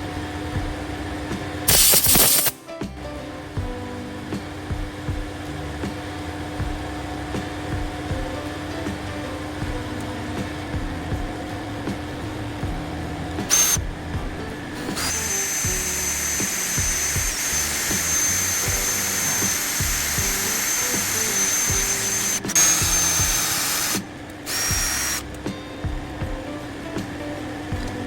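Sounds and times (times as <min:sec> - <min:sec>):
background music: 0:00.1 - 0:28.0
power tool whining: 0:01.7 - 0:02.6, 0:10.3 - 0:25.4.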